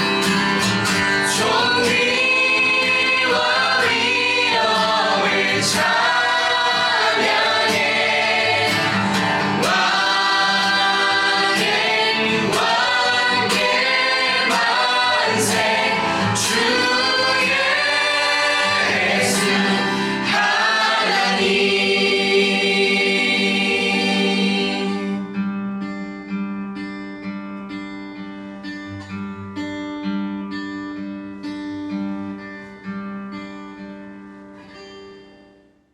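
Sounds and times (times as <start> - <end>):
worship band music: 0.0 - 25.2
group singing: 0.0 - 25.3
guitar: 0.0 - 35.9.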